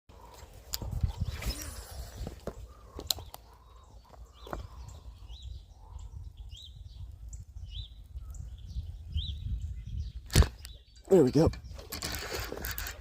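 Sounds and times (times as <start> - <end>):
low wind rumble: 0.1 - 13.0
small bird chirping: 0.2 - 13.0.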